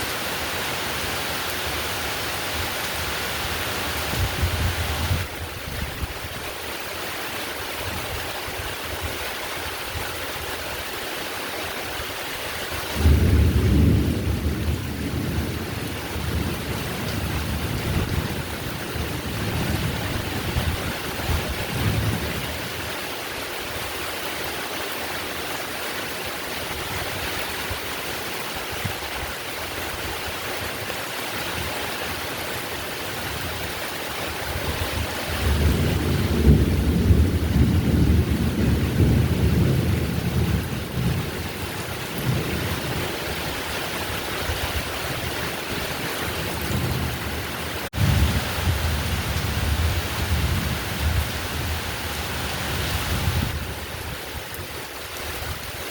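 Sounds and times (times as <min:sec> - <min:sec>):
heavy rain: 0:00.0 - 0:55.9
thunder rumble: 0:13.0 - 0:22.5, 0:34.6 - 0:53.8.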